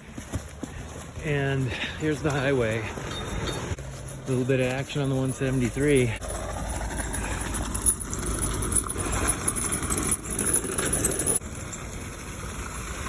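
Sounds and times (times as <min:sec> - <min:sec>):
trucks on snowy highway: 0:00.0 - 0:13.0
clinking and crunching: 0:02.0 - 0:12.0.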